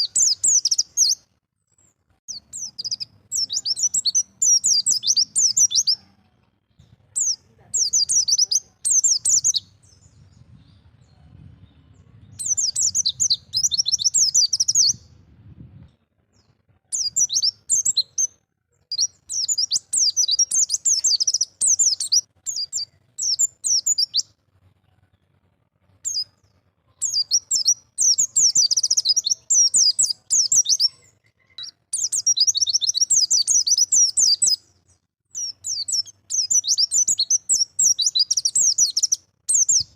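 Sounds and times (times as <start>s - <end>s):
bird twittering: 0.0s - 1.2s, 2.3s - 6.1s, 7.2s - 10.0s, 12.4s - 15.0s, 16.9s - 18.3s, 18.9s - 24.3s, 27.0s - 34.6s, 35.4s - 39.9s.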